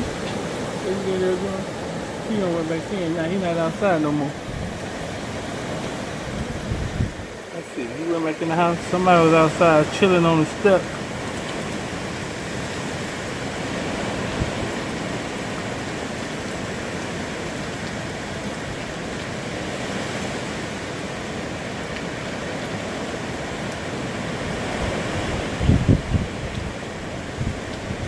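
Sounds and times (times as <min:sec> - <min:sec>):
strong wind rushing: 0:00.0 - 0:07.6, 0:24.6 - 0:28.0.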